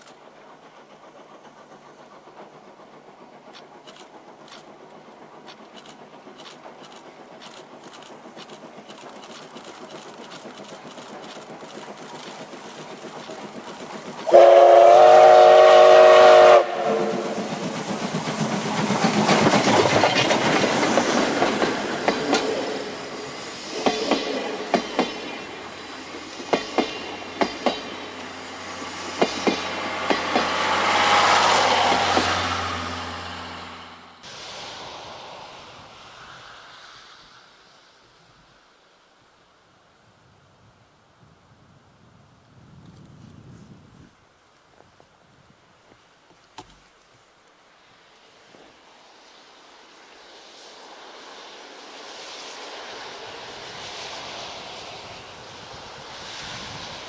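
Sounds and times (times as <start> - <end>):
wheels clicking over rail joints: 0.0 - 14.4, 17.0 - 23.0
steam locomotive exhaust beats: 0.0 - 39.5, 48.0 - 57.0
steam whistle: 14.3 - 17.5.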